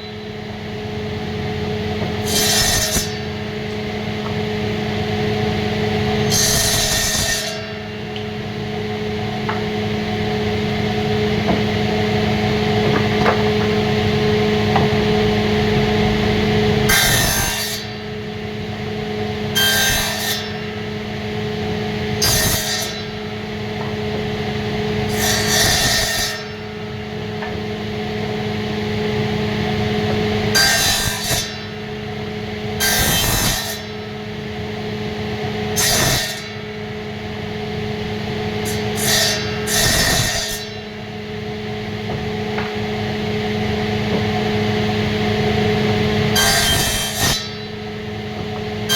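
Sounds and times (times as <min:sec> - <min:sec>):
steady hum: 0:00.0 - 0:06.4, 0:07.4 - 0:19.6
tool cutting wood: 0:01.7 - 0:03.5, 0:05.8 - 0:07.8, 0:22.1 - 0:23.2, 0:23.8 - 0:26.7, 0:30.0 - 0:31.7, 0:32.8 - 0:34.0.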